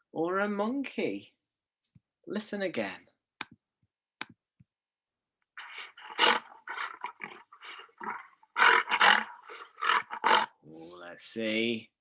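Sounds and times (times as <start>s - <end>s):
lion roaring: 5.6s - 10.6s.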